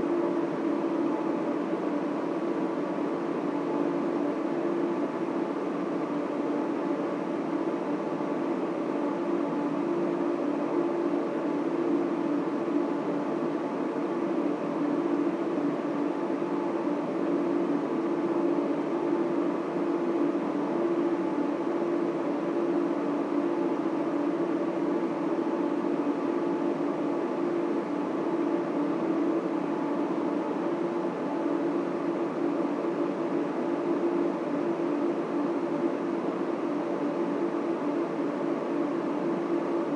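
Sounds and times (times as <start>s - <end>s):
cooling fans droning: 0.0s - 39.9s
equipment hum tones: 0.0s - 39.9s.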